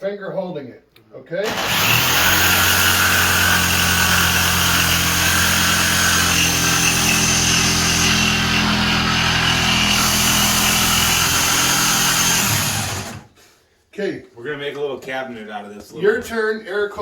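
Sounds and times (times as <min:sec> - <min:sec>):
electric saw cutting: 0:01.4 - 0:13.3.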